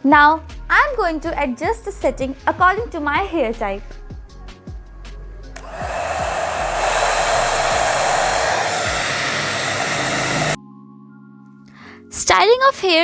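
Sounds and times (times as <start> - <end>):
hot-air brush hair dryer running: 5.6 - 10.6.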